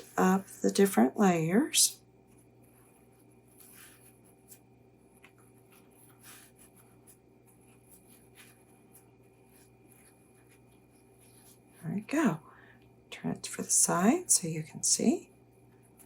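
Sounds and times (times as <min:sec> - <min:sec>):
low steady hum: 0:00.0 - 0:16.0
napkin rustling: 0:02.3 - 0:11.8.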